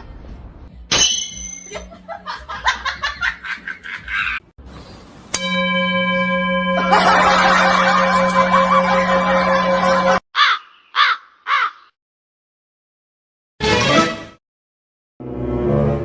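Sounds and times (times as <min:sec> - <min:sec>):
bell-like tone ringing: 0:01.0 - 0:01.8, 0:05.4 - 0:10.2.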